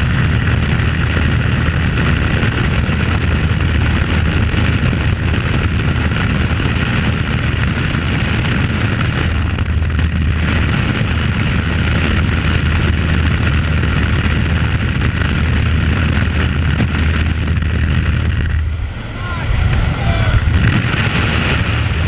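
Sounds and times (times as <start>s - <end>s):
plane engines droning: 0.0s - 22.0s
air rushing: 13.6s - 22.0s.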